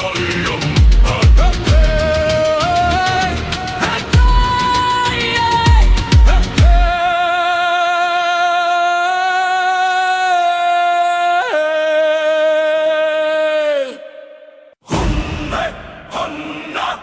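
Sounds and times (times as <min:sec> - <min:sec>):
deep drum hits: 0:00.8 - 0:02.1, 0:14.9 - 0:16.1.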